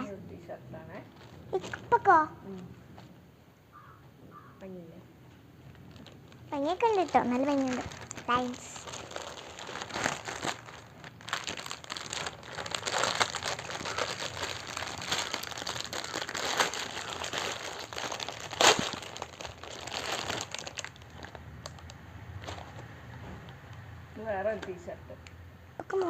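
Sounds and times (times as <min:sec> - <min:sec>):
plastic packaging crinkling: 0:01.1 - 0:02.1, 0:05.6 - 0:22.9.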